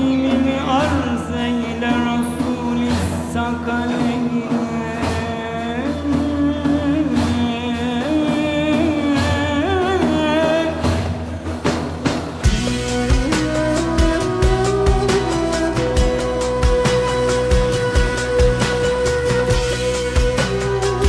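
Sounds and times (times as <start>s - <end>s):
low accompaniment with beat: 0.0s - 21.0s
person singing ornamented lines: 12.5s - 21.0s.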